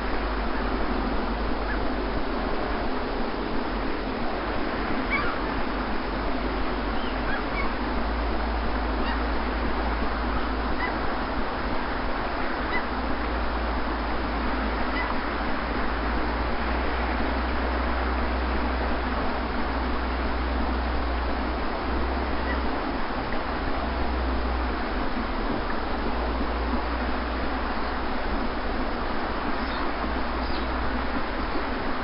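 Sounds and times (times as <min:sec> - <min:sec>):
sea surf washing on beach: 0:00.0 - 0:32.0
short bird calls: 0:05.1 - 0:05.4, 0:06.9 - 0:07.7, 0:14.9 - 0:15.2, 0:29.6 - 0:30.7.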